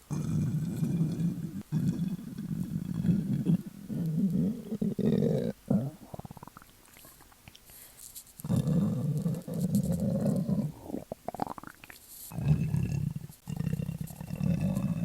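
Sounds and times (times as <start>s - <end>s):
stomach growling: 0.0s - 7.6s, 8.4s - 15.0s.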